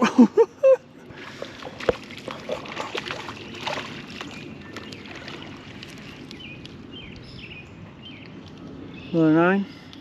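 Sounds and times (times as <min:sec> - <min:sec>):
low outdoor background: 0:00.0 - 0:10.0.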